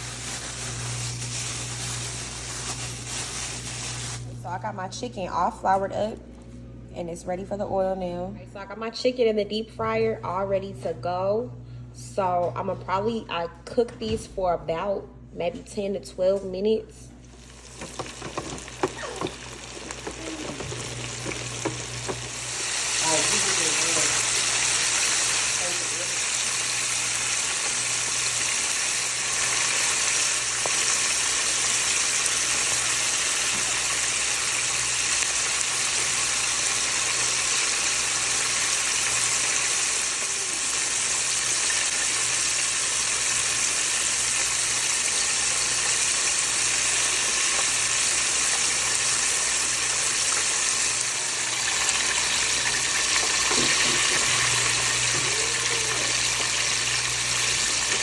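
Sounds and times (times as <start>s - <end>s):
chicken wings sizzling in oil: 0.0s - 4.4s, 17.2s - 58.0s.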